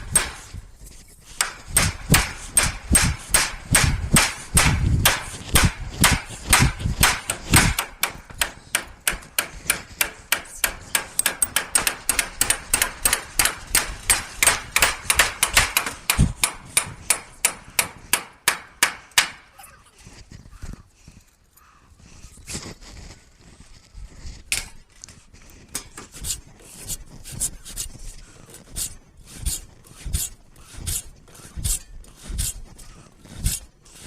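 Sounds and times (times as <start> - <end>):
hammer striking roof timber: 0.0 - 0.5, 1.4 - 19.5.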